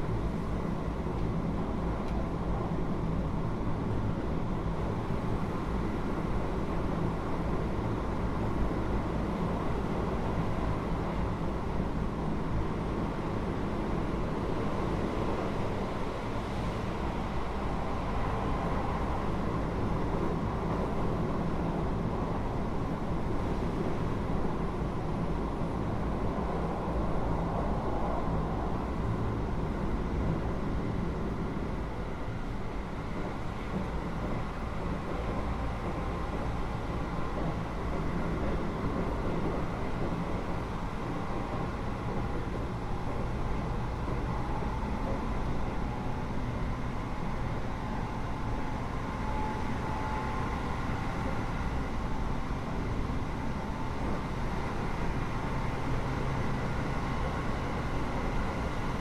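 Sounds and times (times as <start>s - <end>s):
train wheels rumbling: 17.2s - 59.0s.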